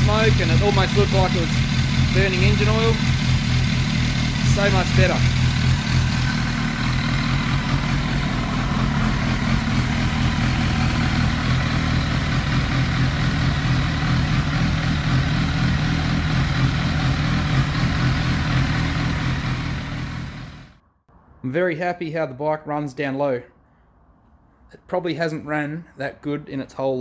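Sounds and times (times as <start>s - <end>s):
motorcycle engine idling: 0.0s - 20.8s.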